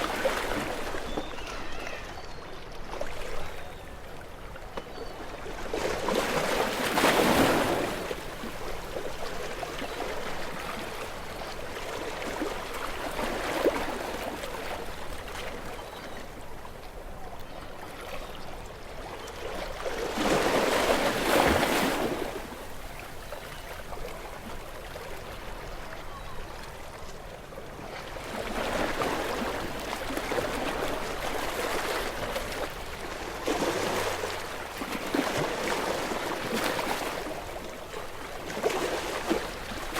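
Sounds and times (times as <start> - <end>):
sea waves breaking on rocks: 20.1 - 22.6.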